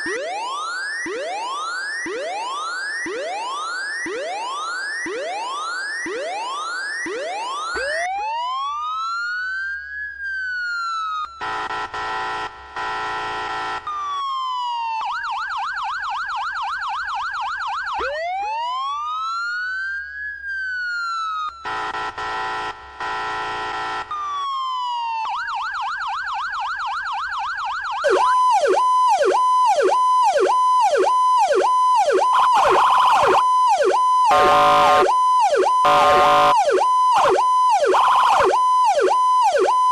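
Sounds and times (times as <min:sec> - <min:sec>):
siren whooping: 0:00.0 - 0:11.6, 0:13.8 - 0:22.0, 0:23.0 - 0:39.9
emergency vehicle sirens: 0:00.0 - 0:39.9
horn-like siren blasts: 0:11.3 - 0:14.1, 0:21.3 - 0:24.5, 0:28.0 - 0:39.9.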